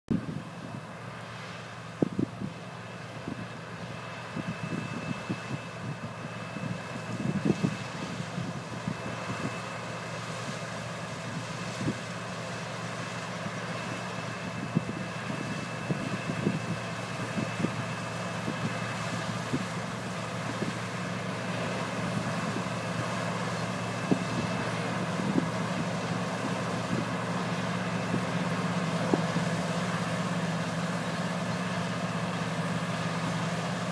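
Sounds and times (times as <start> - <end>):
combine engine drone: 0.1 - 33.9.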